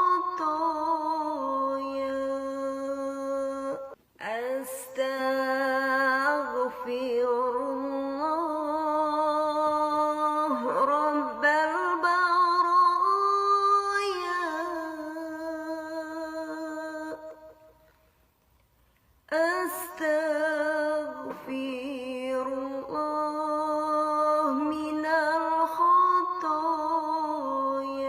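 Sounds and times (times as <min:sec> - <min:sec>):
person chanting melodically: 0:00.0 - 0:17.7.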